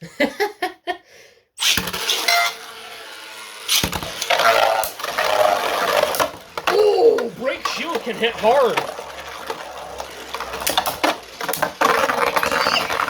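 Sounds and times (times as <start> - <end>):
spinning tops launched with rattle: 1.6 - 6.7, 8.6 - 13.0
spinning tops scraping whir: 1.6 - 13.0
spinning tops clattering hits: 10.0 - 13.0.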